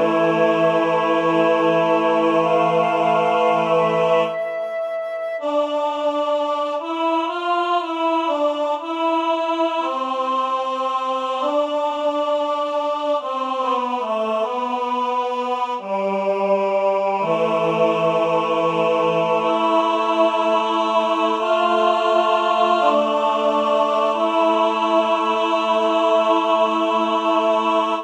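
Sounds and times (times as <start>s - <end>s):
slow chant-like melody: 0.0s - 28.0s.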